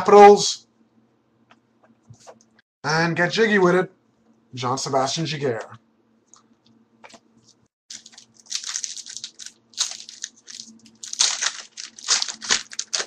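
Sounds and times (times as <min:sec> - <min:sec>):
card wrappers rustling and crinkling: 0:07.9 - 0:13.0.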